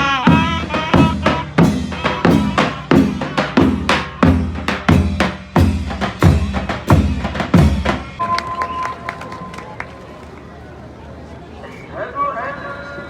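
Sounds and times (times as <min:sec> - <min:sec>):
drums playing steady beat: 0:00.0 - 0:09.0.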